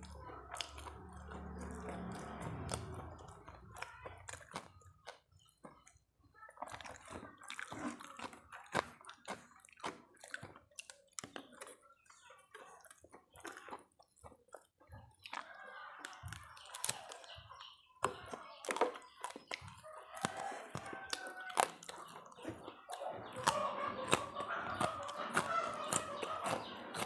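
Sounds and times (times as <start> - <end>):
person chewing wetly: 0.0 - 27.0.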